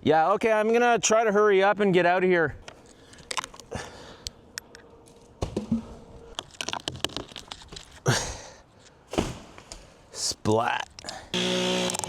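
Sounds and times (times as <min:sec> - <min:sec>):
climbing gear clicks and knocks: 0:06.3 - 0:08.0.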